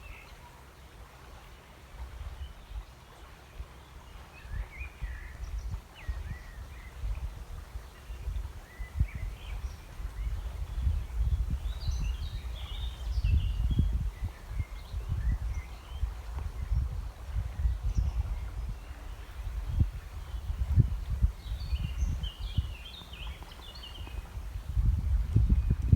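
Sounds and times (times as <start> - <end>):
small birds chirping: 17.8 - 25.9.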